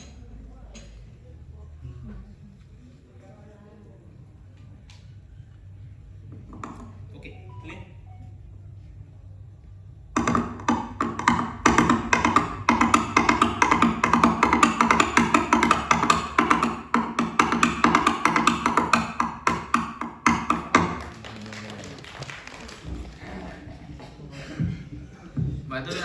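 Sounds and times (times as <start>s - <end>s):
background music: 4.6s - 21.2s
coconut shell hoofbeats: 10.1s - 21.0s.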